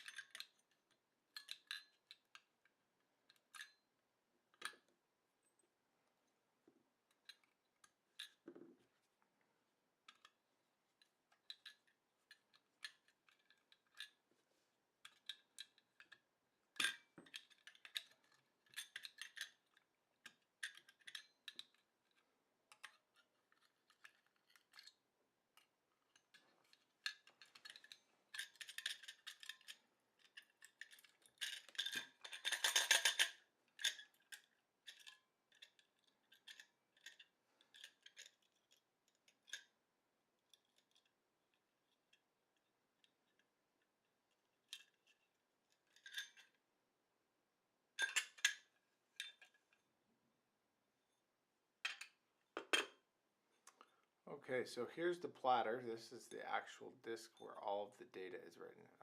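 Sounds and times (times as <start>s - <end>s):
metal parts clinking and scraping: 26.2s - 38.8s.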